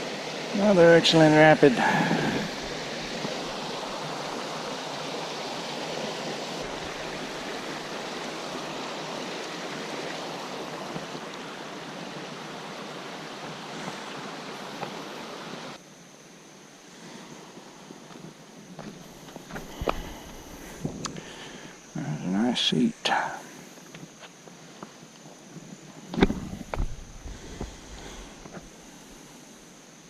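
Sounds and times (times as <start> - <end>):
water rushing over rocks: 0.0 - 15.8, 25.6 - 29.7.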